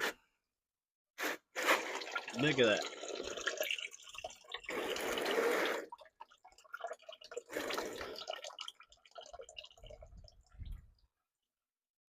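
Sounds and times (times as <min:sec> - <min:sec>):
fluid dripping: 0:01.8 - 0:11.1.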